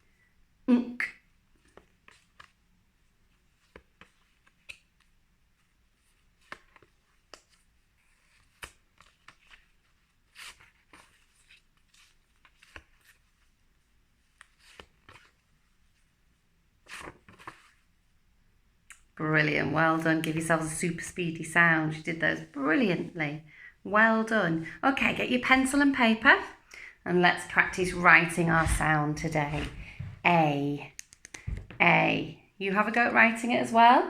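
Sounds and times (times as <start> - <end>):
paper cards rustling: 1.5 - 2.6, 3.2 - 16.1, 16.8 - 17.9.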